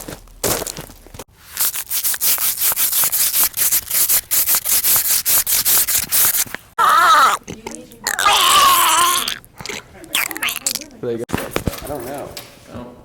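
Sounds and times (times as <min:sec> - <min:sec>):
rapid rhythmic rubbing strokes: 0:01.6 - 0:06.6.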